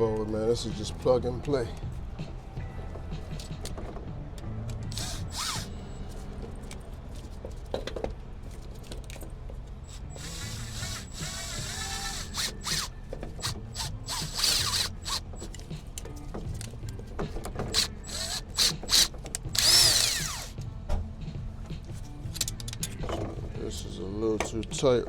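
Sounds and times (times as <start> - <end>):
ratchet clicking: 10.0 - 15.8, 17.6 - 20.6.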